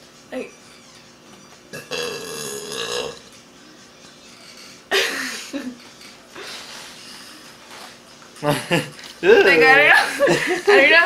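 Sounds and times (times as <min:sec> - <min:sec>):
person burping: 0:01.7 - 0:03.3.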